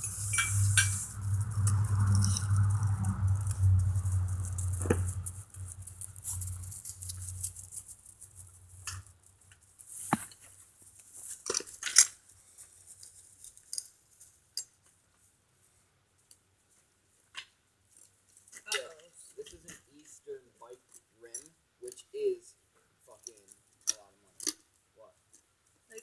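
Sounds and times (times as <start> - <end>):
low hum: 0.0 - 9.1
bicycle parts clicking and rattling: 0.0 - 14.9, 23.2 - 24.7.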